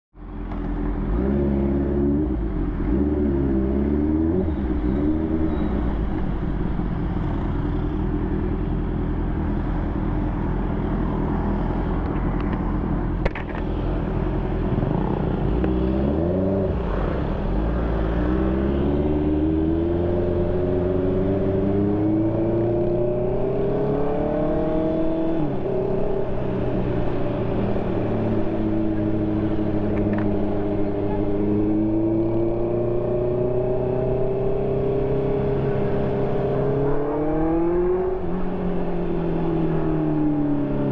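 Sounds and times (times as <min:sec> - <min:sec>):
motorcycle engine revving: 0:14.4 - 0:39.8.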